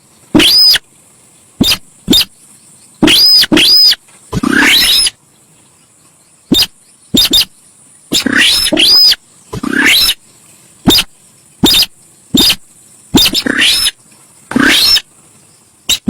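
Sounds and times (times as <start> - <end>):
bird calling: 0.3 - 0.9, 1.6 - 5.2, 6.5 - 15.1.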